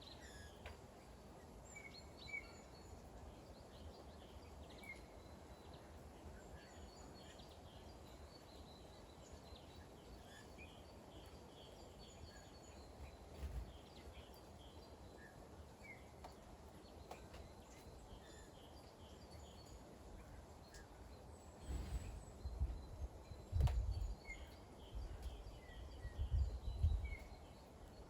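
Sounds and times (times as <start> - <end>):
rain low rumble: 11.4 - 28.0
wind buffeting microphone: 21.6 - 24.4, 25.0 - 27.3.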